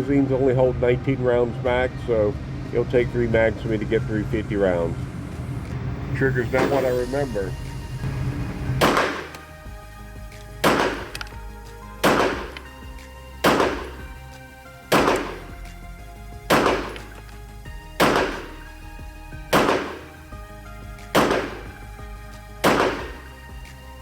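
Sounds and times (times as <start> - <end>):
pistol shots: 6.6 - 7.0, 8.8 - 9.5, 10.6 - 11.4, 12.0 - 12.7, 13.4 - 14.3, 14.9 - 15.8, 16.5 - 17.3, 18.0 - 18.8, 19.5 - 20.3, 21.0 - 22.0, 22.6 - 23.6.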